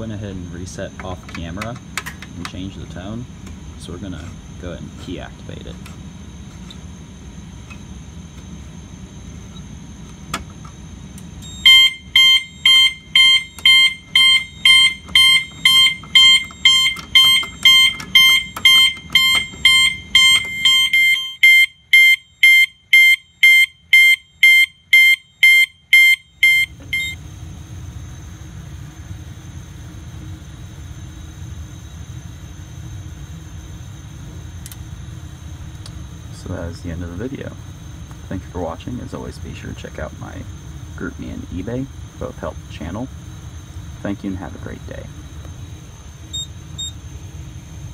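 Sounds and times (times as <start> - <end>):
fire alarm horn pulsing: 11.3 - 27.2.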